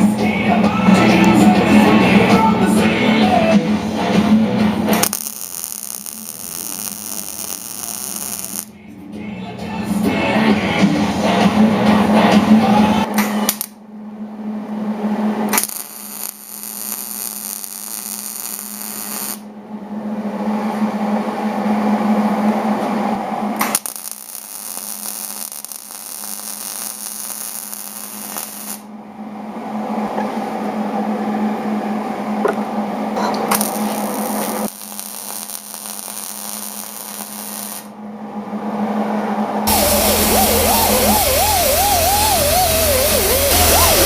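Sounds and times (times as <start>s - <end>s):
steady hum: 0.0s - 44.0s
welding arc crackling: 4.0s - 8.7s, 15.5s - 19.5s, 23.6s - 28.9s, 33.5s - 37.9s, 39.7s - 44.0s.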